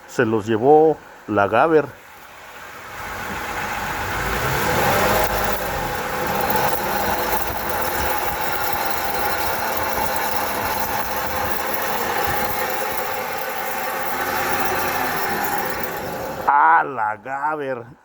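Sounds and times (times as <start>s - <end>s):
wheel bearing droning and grinding: 2.1s - 16.5s.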